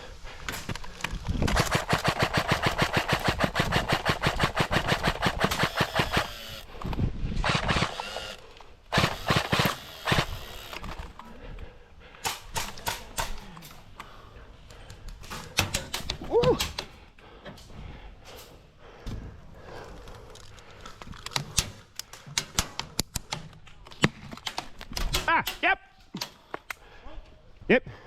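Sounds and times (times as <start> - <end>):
airsoft gun firing bursts: 1.5 - 6.7, 7.4 - 8.2, 8.9 - 10.6.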